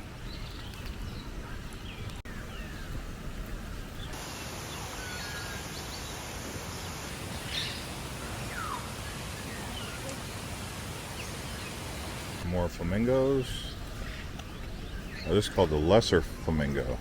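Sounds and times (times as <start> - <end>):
birds chirping and whistling: 7.2 - 10.1, 13.4 - 17.0.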